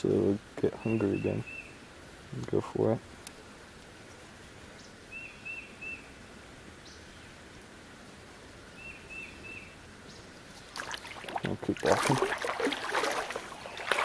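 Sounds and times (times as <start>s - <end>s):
outdoor background hiss: 0.0s - 14.0s
bird chirping: 0.6s - 1.8s, 4.7s - 6.2s, 8.7s - 10.9s, 13.2s - 14.0s.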